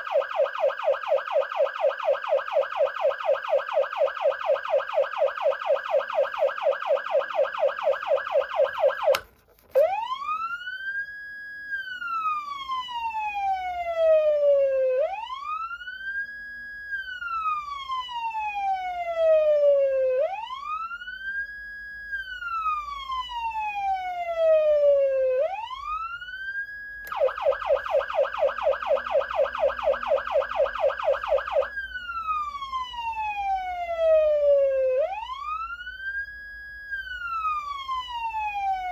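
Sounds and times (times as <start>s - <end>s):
electronic siren yelp and wail: 0.0s - 9.2s, 9.8s - 38.9s.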